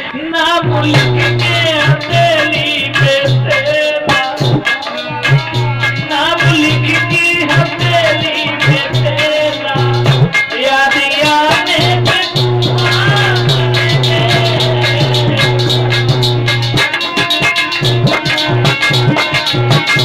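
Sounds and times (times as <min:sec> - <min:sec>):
tabla beat: 0:00.0 - 0:20.0
wavering sung melody: 0:00.7 - 0:20.0.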